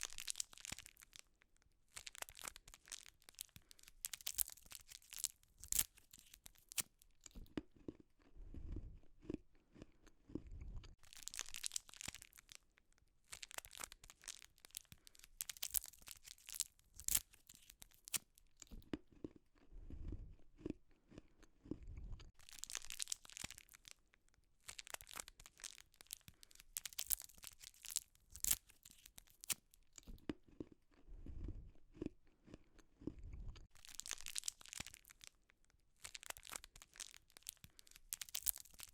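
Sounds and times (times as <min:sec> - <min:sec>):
plastic wrappers crinkling: 0:00.0 - 0:01.3, 0:01.9 - 0:07.4, 0:11.0 - 0:12.6, 0:13.3 - 0:18.8, 0:22.4 - 0:24.0, 0:24.6 - 0:30.1, 0:33.7 - 0:35.4, 0:36.0 - 0:38.9
crunching and chewing: 0:00.0 - 0:38.9.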